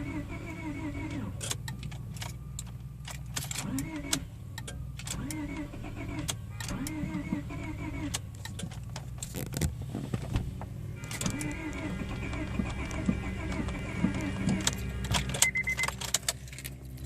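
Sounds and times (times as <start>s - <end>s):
starter cranking engine: 0.0s - 2.0s, 5.0s - 9.6s, 11.0s - 16.7s.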